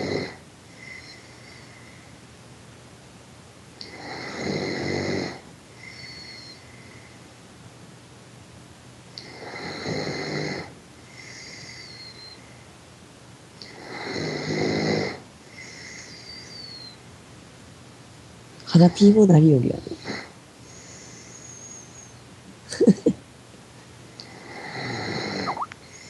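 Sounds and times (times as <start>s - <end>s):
person snoring: 0.0s - 0.4s
whistling breath: 0.8s - 2.0s, 5.8s - 7.2s, 11.4s - 12.6s, 15.5s - 17.0s, 20.6s - 22.3s.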